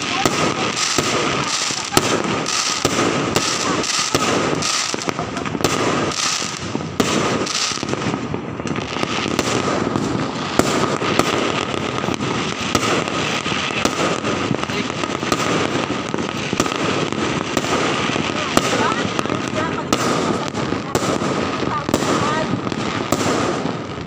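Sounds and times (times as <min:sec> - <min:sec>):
firecrackers crackling: 0:00.0 - 0:24.0
firework bangs: 0:00.0 - 0:24.0.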